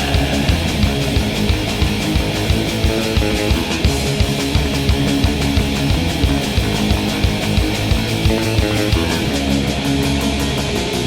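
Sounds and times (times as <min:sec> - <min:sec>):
fast drum beat: 0:00.0 - 0:09.4
distorted electric guitar: 0:00.0 - 0:11.0.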